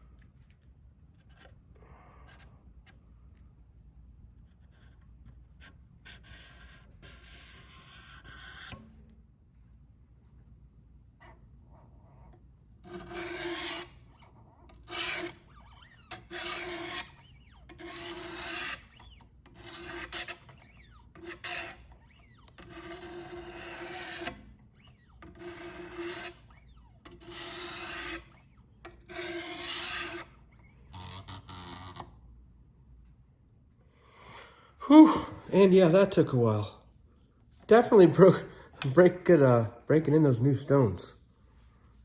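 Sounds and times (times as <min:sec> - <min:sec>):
sharpening stone scraping knife: 0:05.6 - 0:09.0, 0:12.8 - 0:31.2.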